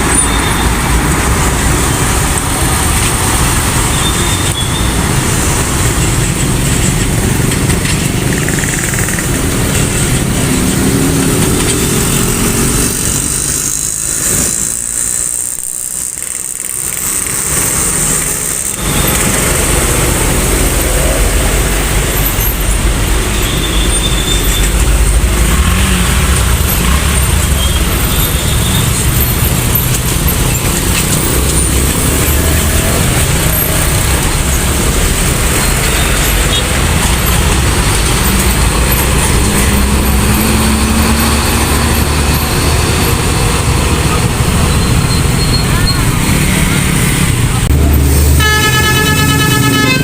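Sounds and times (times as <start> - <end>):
heavy vehicles passing: 0.0 - 50.0.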